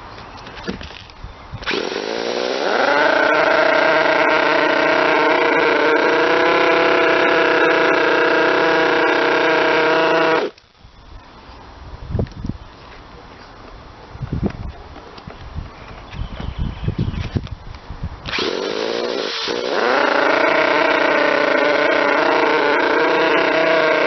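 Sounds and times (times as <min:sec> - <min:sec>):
model engine high-revving: 0:01.6 - 0:10.5, 0:18.3 - 0:24.0.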